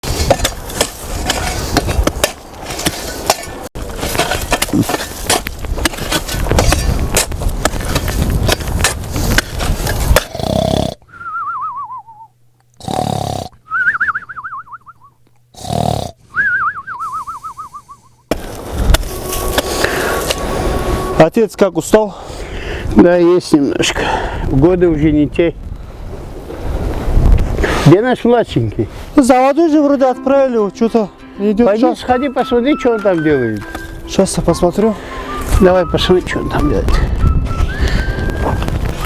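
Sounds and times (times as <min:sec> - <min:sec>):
rough scraping and crunching: 0:00.0 - 0:11.0, 0:17.0 - 0:21.4
cartoon snore with whistle: 0:17.0 - 0:18.1.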